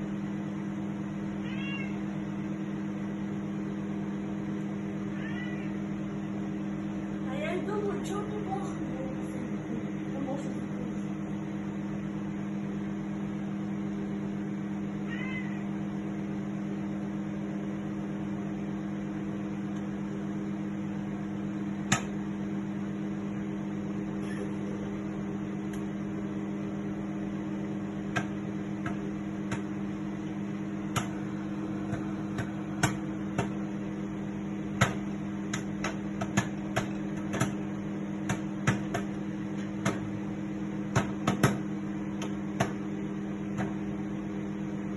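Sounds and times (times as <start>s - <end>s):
microwave oven humming: 0.0s - 44.9s
sharp pops inside oven: 30.9s - 31.2s, 31.9s - 33.6s, 34.8s - 37.6s, 38.2s - 40.1s, 40.9s - 42.8s.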